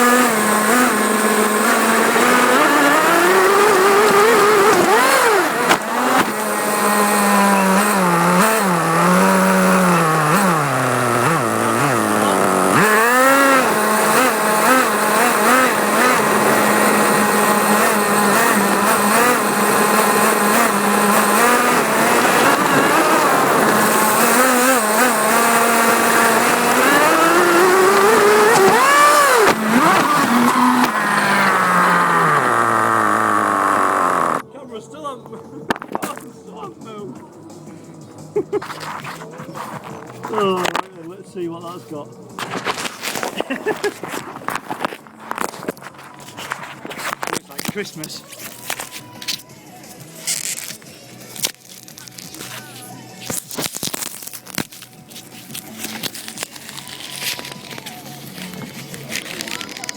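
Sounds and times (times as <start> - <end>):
rc car motor whine: 0.0 - 34.4.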